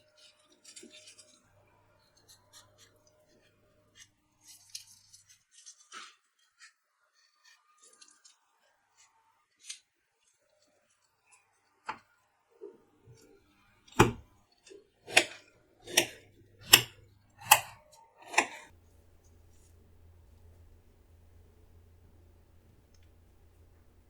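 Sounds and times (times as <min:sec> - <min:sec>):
knife chopping melon: 0:14.0 - 0:14.2, 0:15.1 - 0:15.3, 0:15.9 - 0:17.8, 0:18.4 - 0:24.0.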